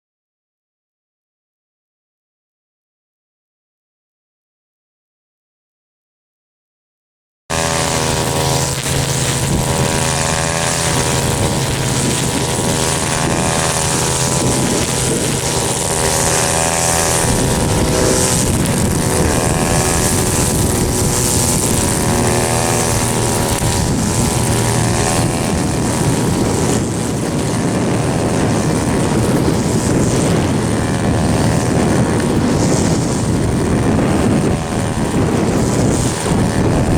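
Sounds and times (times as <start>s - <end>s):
propeller airplane engine drone: 7.5s - 36.9s.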